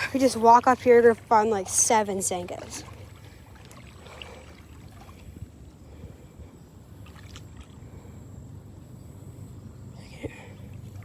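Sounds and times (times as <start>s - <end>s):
water sloshing: 0.0s - 6.0s, 6.8s - 8.2s.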